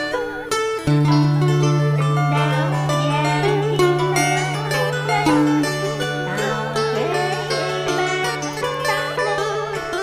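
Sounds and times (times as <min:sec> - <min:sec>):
plucked strings melody: 0:00.0 - 0:10.0.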